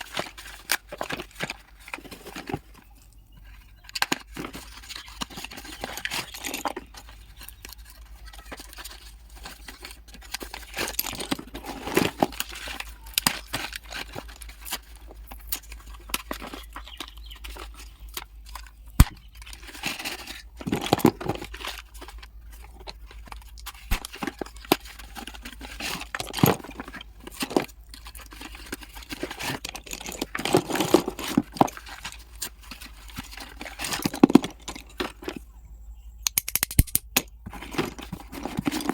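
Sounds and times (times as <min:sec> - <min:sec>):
pencils clicking and knocking: 0:00.0 - 0:35.5, 0:36.2 - 0:38.9
packaging tearing and crinkling: 0:04.1 - 0:34.8.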